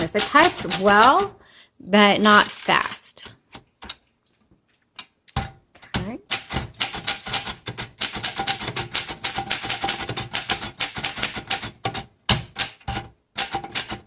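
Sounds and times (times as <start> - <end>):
manual typewriter typing: 0.0 - 1.3, 6.3 - 14.0.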